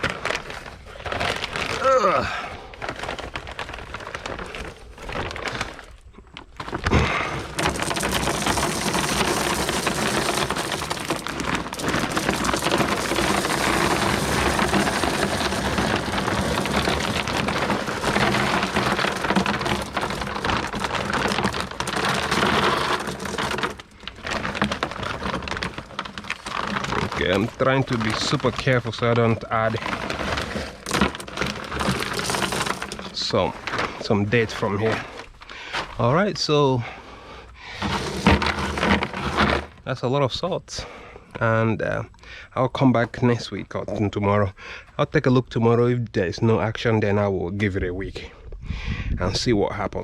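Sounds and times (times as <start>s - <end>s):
salt pouring into tank: 6.8s - 35.1s.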